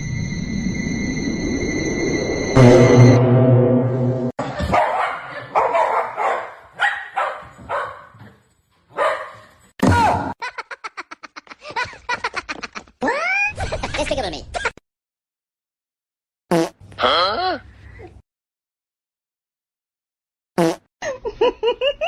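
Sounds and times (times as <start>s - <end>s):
dog barking: 4.6s - 9.5s
dog yipping: 4.8s - 8.1s, 9.0s - 9.5s.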